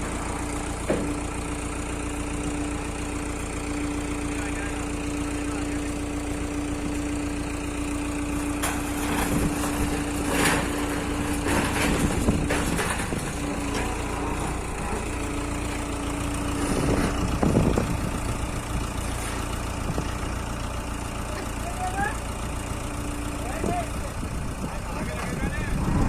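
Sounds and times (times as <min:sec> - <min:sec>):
crane diesel engine running: 0:00.0 - 0:26.0
knocks and clanks: 0:00.8 - 0:01.3, 0:08.4 - 0:15.9.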